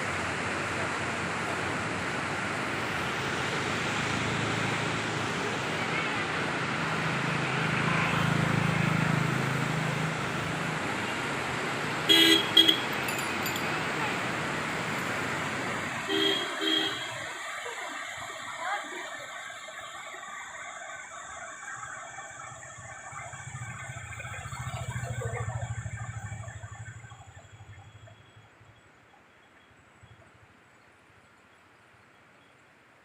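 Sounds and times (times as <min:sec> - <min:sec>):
vehicle engine hum: 0:00.0 - 0:19.3, 0:21.1 - 0:30.4
road traffic noise: 0:00.0 - 0:33.0
vehicle horn toots: 0:12.1 - 0:12.9, 0:16.1 - 0:17.2.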